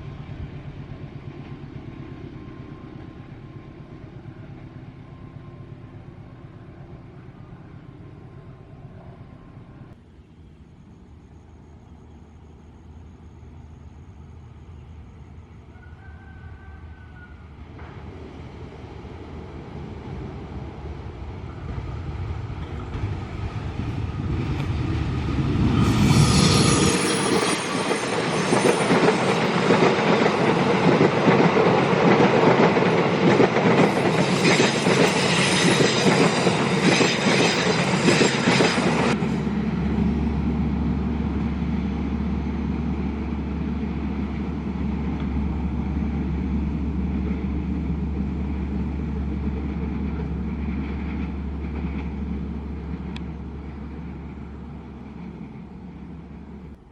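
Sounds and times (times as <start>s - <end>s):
train passing: 0.0s - 56.9s
high-pitched metallic squeals: 25.5s - 29.7s.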